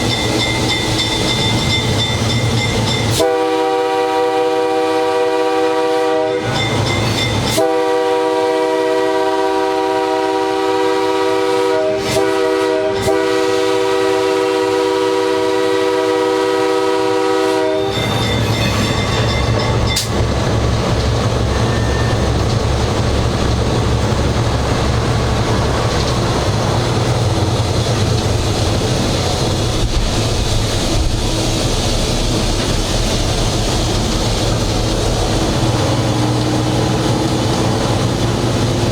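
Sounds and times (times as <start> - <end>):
locomotive engine rumble: 0.0 - 38.9
train air horn chord: 3.1 - 6.6, 7.5 - 18.1.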